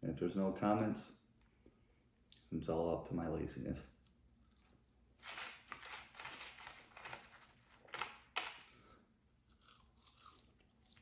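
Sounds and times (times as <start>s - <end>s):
person chewing food: 8.6s - 11.0s.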